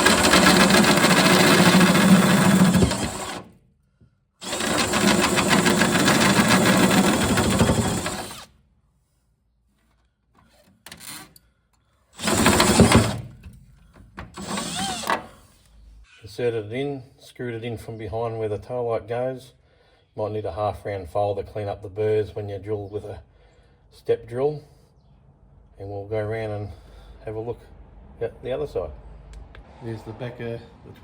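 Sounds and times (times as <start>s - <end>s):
power drill cutting metal: 0.0s - 3.5s, 4.4s - 8.5s, 12.2s - 13.2s, 14.4s - 15.3s.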